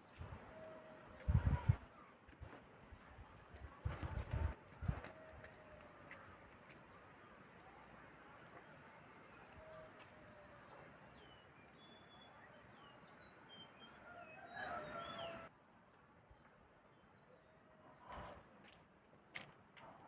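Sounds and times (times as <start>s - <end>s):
bird chirps: 9.4s - 15.5s.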